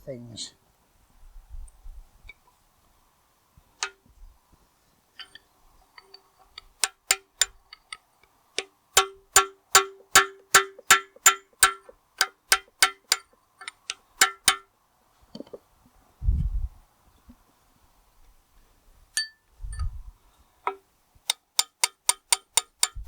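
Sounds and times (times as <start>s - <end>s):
hammer striking steel: 6.8s - 7.6s, 9.0s - 14.7s.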